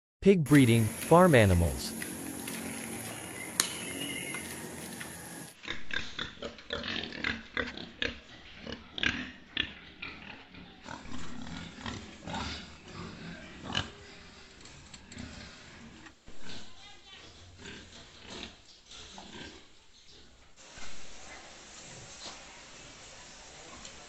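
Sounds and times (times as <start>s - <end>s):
pigs grunting: 5.6s - 14.5s, 15.2s - 16.8s, 17.4s - 20.3s.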